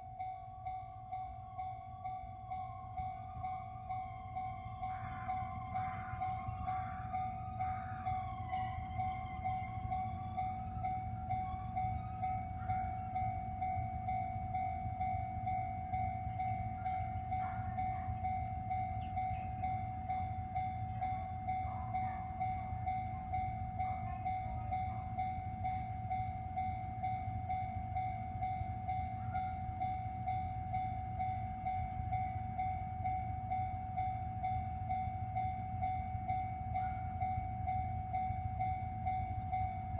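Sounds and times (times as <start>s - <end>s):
diesel train rumbling: 0.0s - 39.9s
level crossing alarm ringing: 0.0s - 39.9s
train horn: 2.7s - 13.3s.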